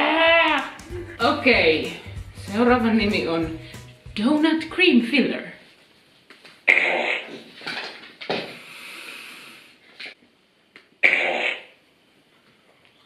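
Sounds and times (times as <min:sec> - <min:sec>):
sputtering fart sound effect: 0:11.0 - 0:11.7.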